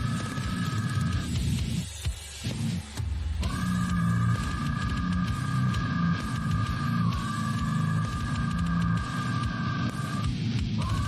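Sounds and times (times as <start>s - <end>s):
high-pitched held tones: 3.4s - 11.0s.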